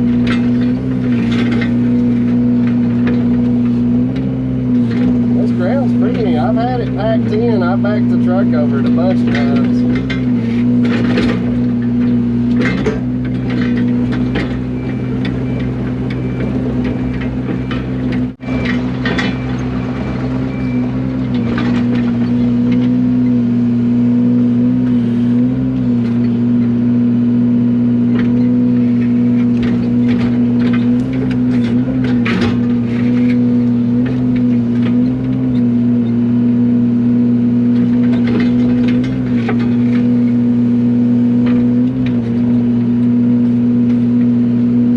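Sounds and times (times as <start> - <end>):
diesel excavator engine running: 0.0 - 44.9.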